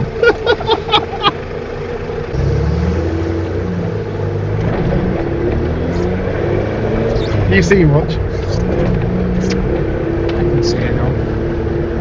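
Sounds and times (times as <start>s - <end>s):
car engine from inside cabin: 0.0s - 12.0s.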